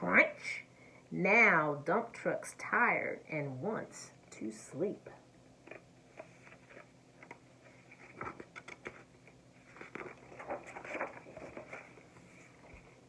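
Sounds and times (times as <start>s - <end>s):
book page rustling: 5.7s - 13.0s.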